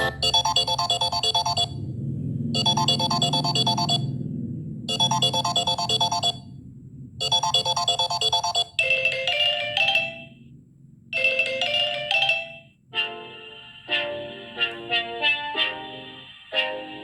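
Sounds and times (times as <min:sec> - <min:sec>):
short phone chime: 0:00.0 - 0:01.7
repeating electronic notes: 0:00.0 - 0:01.8, 0:02.6 - 0:04.1, 0:04.9 - 0:06.4, 0:07.2 - 0:09.1
fuller phone tone: 0:00.0 - 0:01.9, 0:02.6 - 0:04.1, 0:04.9 - 0:06.4, 0:07.2 - 0:09.0.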